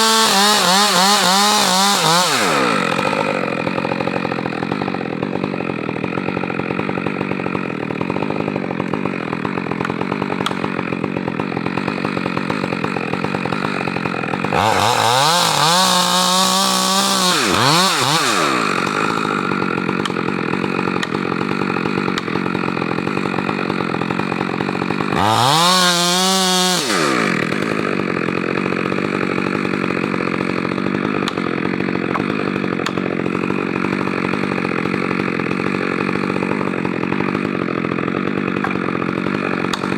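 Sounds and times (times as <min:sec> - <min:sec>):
chainsaw running and revving: 0:00.0 - 0:39.9.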